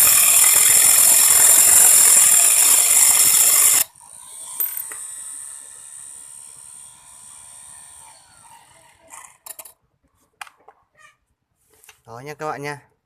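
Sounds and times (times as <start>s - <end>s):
drill motor whining: 0.0s - 9.4s.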